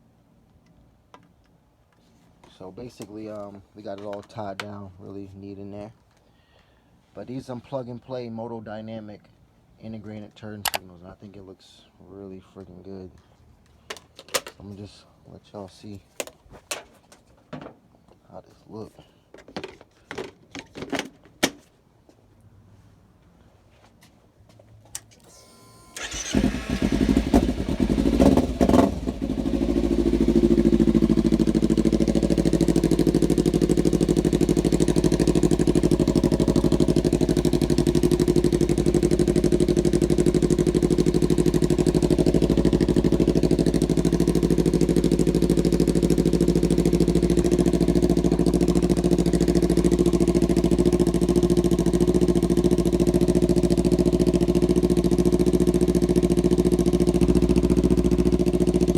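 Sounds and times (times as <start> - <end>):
motorcycle engine revving and idling: 25.3 - 58.9.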